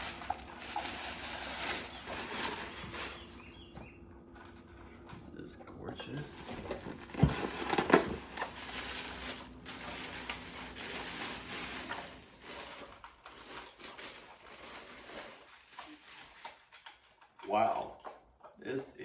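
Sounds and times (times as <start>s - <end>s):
packaging rustling: 0.0s - 3.7s, 6.4s - 17.0s.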